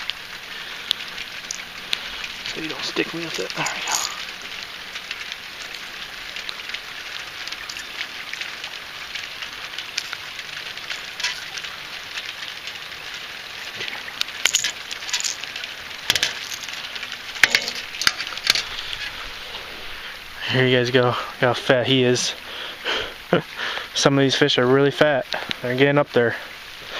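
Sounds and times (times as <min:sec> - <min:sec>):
rain falling: 0:00.0 - 0:26.9
sharp clicks and clinks: 0:03.6 - 0:04.3, 0:14.4 - 0:15.5, 0:16.1 - 0:16.8, 0:17.4 - 0:18.7.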